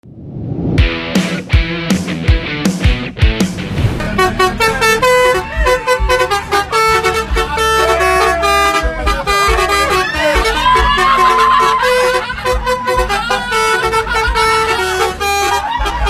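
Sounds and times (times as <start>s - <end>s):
low thuds: 0.8s - 7.5s
multi-tone air horns playing tune: 4.3s - 10.9s.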